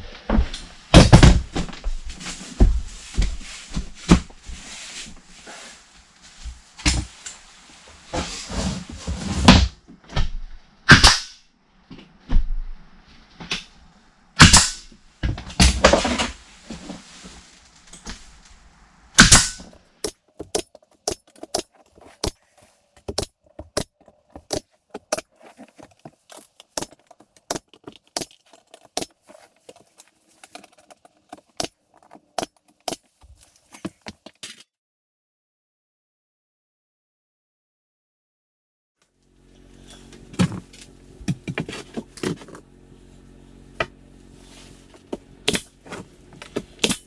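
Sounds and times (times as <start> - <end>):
nail gun firing: 10.9 - 11.4, 14.4 - 14.9, 19.2 - 19.6.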